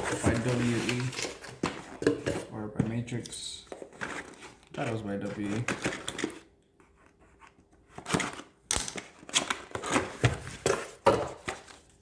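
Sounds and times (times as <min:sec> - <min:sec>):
cardboard box scraping and rustling: 0:00.0 - 0:01.6.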